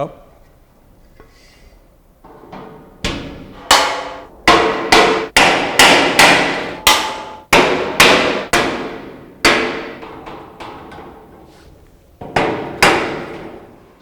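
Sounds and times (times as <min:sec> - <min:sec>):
rubber mallet striking steel: 0:03.1 - 0:11.2, 0:12.2 - 0:13.7.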